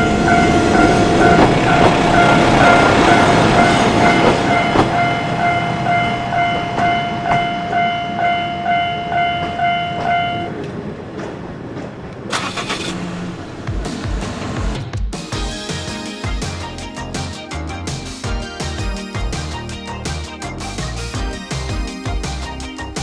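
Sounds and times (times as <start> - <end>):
level-crossing warning bell: 0.0 - 10.7
diesel train rumbling past: 0.0 - 12.3.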